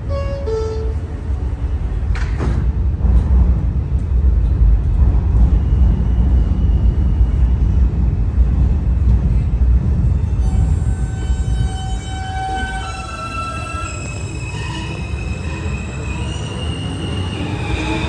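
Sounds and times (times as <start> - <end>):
subway train rumbling: 0.0 - 18.0
train brake squeal: 10.4 - 18.0.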